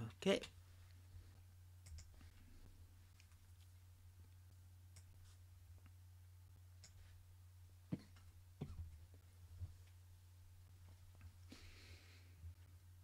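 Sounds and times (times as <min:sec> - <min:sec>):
low electrical hum: 0:00.0 - 0:13.0
faint clicks: 0:01.8 - 0:02.2.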